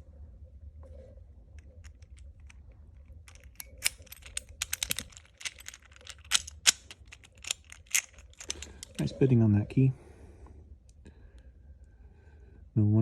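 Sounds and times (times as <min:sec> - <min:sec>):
padlock and key clicking: 0:03.3 - 0:09.1.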